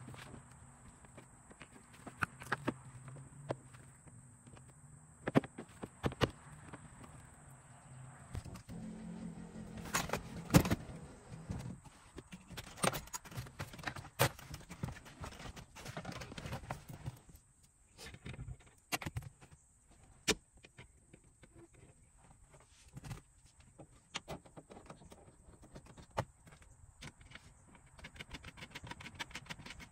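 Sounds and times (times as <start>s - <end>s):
low hum: 6.4s - 11.9s.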